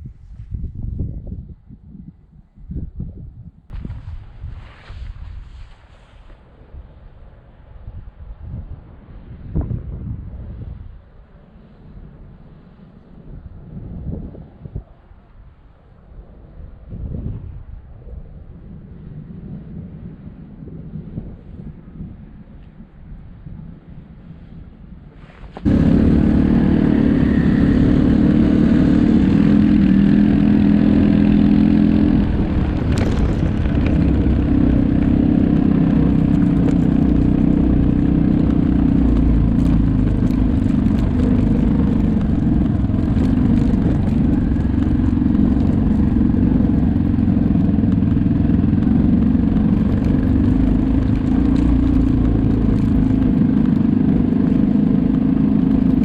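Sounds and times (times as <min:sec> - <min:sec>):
atv engine running: 0:25.6 - 0:56.0.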